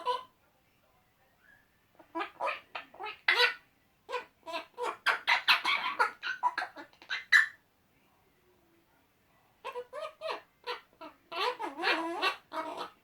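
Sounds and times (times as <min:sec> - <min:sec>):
parrots making choppy calls: 0:02.0 - 0:07.6, 0:09.6 - 0:13.0.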